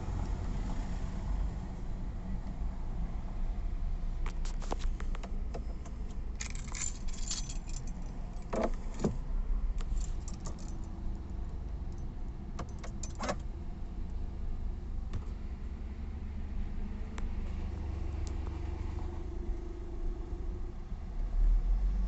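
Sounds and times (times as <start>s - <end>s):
low steady rumble: 0.0s - 21.8s
metallic jingling and clicking: 5.8s - 9.1s, 9.8s - 11.0s, 11.9s - 13.4s.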